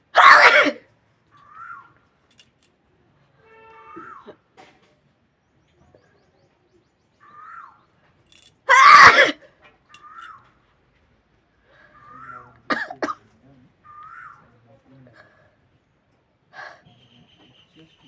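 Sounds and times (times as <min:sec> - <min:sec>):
woman sneezing: 0:00.2 - 0:00.8, 0:08.7 - 0:09.4.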